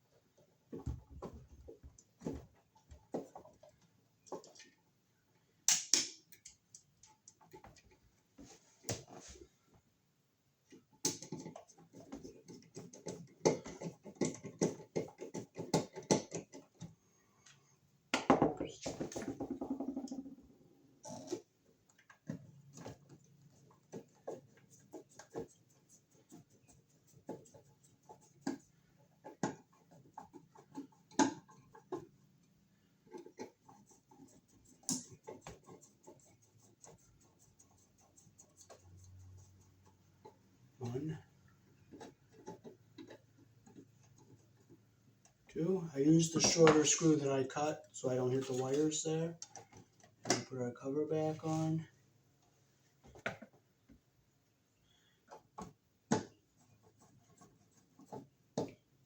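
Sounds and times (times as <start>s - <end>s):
clicks and scraping of wires: 10.7s - 17.6s, 33.0s - 41.2s, 46.4s - 50.5s.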